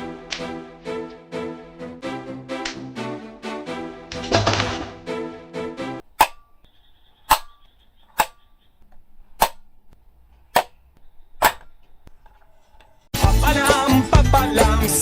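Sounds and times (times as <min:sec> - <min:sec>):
sharp dry snaps: 0:02.6 - 0:02.9.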